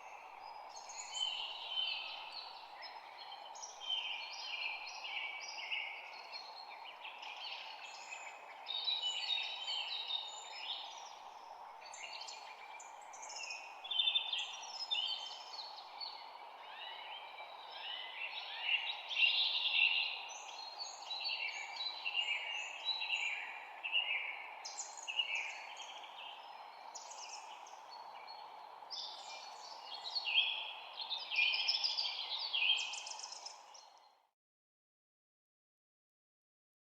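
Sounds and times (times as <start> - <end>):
birds chirping and trilling: 24.6 - 34.0.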